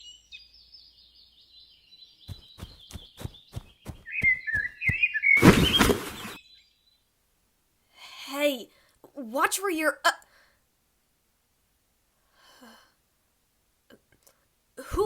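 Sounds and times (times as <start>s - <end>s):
birds chirping: 0.0s - 7.2s
quick footsteps: 2.3s - 6.4s.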